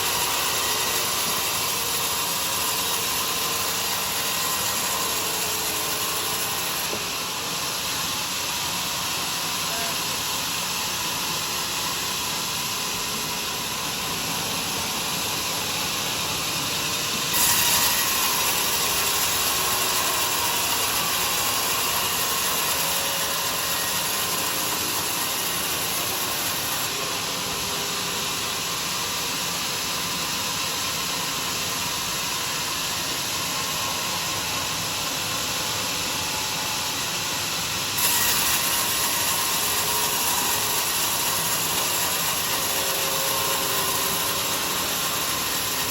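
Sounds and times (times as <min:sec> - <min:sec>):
sawmill sawing through a log: 0:00.0 - 0:07.8, 0:17.1 - 0:28.9, 0:37.9 - 0:45.9.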